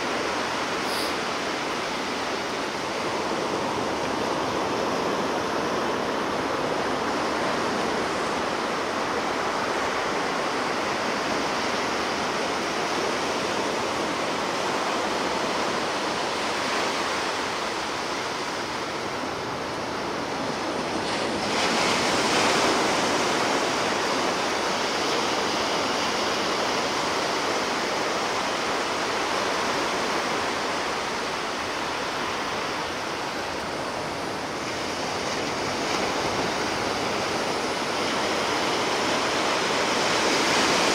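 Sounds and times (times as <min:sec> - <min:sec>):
ocean surf breaking waves: 0:00.0 - 0:40.9.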